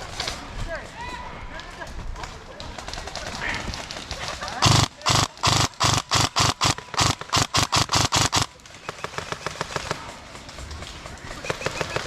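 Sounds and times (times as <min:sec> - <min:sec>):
airsoft rifle firing: 0:04.6 - 0:10.1.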